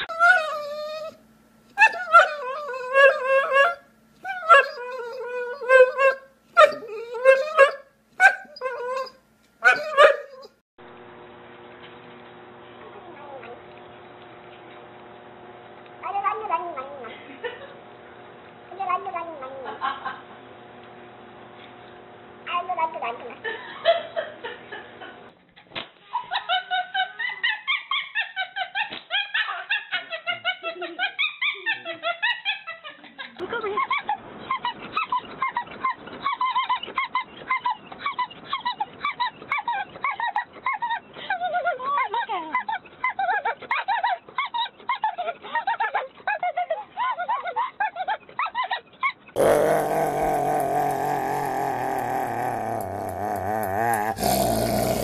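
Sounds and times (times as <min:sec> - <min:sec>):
dog whining and howling: 0:00.0 - 0:01.2, 0:01.8 - 0:10.6, 0:16.0 - 0:17.1, 0:48.4 - 0:55.0
animal yipping: 0:01.8 - 0:10.5
dog yelp: 0:01.8 - 0:10.5.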